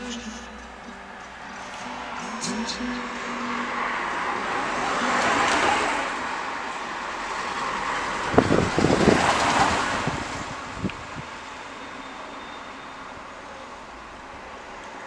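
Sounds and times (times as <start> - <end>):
wind buffeting microphone: 3.9 - 11.4.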